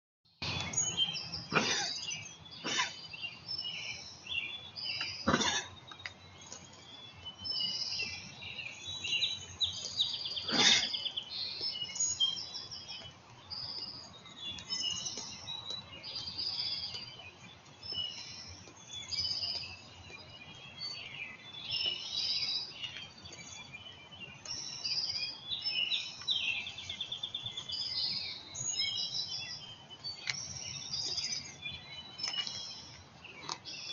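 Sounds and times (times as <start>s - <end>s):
small birds chirping: 0.3s - 33.9s
deer coughing: 1.5s - 2.0s, 2.6s - 3.1s, 5.2s - 5.8s, 10.4s - 11.1s.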